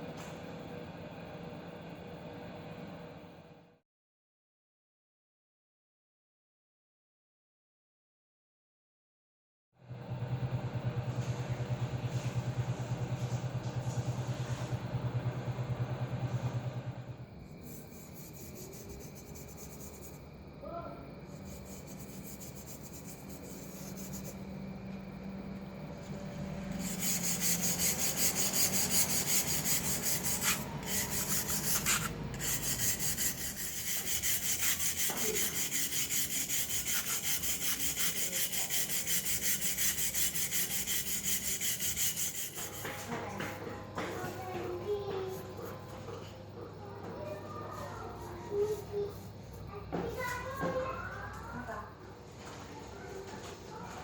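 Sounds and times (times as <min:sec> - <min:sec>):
abrasive hand rubbing strokes: 0:17.6 - 0:20.2, 0:21.4 - 0:24.4, 0:26.7 - 0:43.1.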